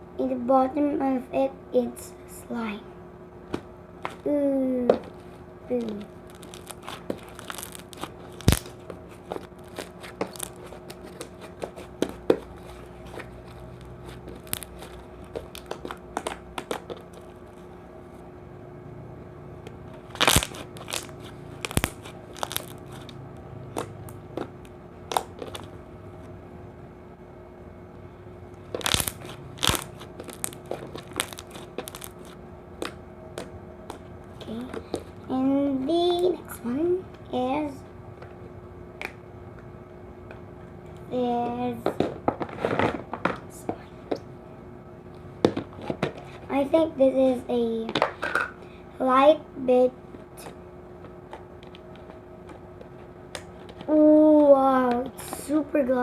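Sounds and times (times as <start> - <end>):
slime squishing with air pops: 6.3 - 8.8.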